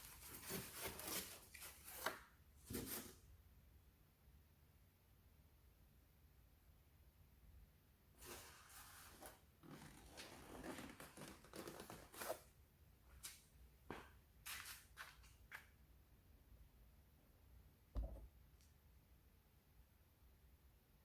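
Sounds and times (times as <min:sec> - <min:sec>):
packing material rustling and tearing: 0:00.0 - 0:02.2, 0:08.2 - 0:12.4.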